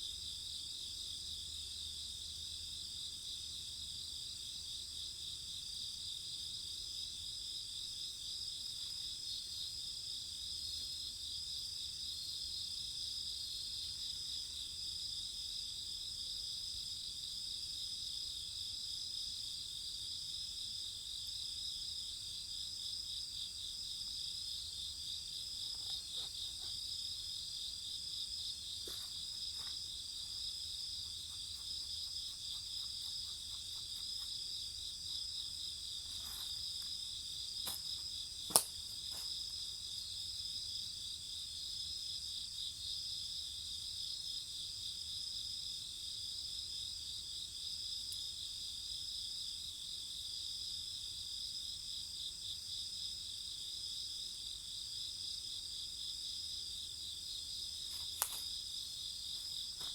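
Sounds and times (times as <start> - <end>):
insects trilling: 23.5 - 41.1, 56.6 - 59.9
bonfire pops and crackles: 38.5 - 38.9.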